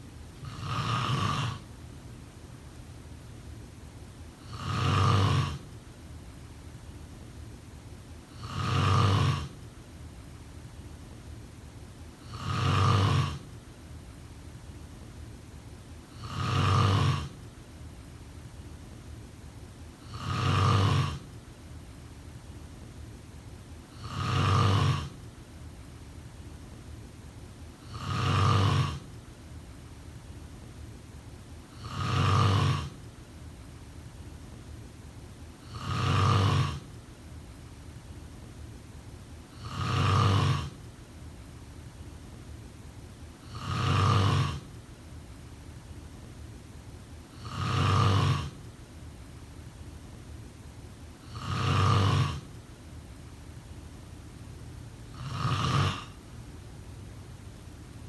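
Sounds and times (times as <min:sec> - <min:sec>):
steady background hiss: 0:00.0 - 0:58.0
person snoring: 0:00.4 - 0:01.7, 0:04.4 - 0:05.7, 0:08.3 - 0:09.6, 0:12.2 - 0:13.5, 0:16.1 - 0:17.4, 0:20.0 - 0:21.3, 0:23.9 - 0:25.2, 0:27.8 - 0:29.2, 0:31.7 - 0:33.0, 0:35.6 - 0:37.0, 0:39.5 - 0:40.8, 0:43.4 - 0:44.8, 0:47.3 - 0:48.6, 0:51.2 - 0:52.6, 0:55.1 - 0:56.2.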